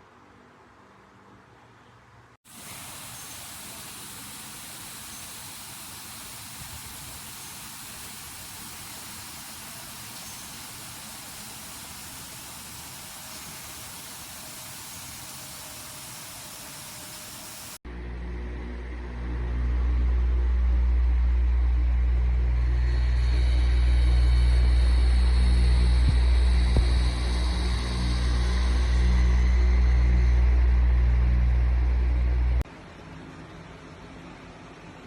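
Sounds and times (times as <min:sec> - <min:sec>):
fan air hiss: 0:02.4 - 0:18.0, 0:19.0 - 0:35.0
low rumble: 0:17.9 - 0:32.6.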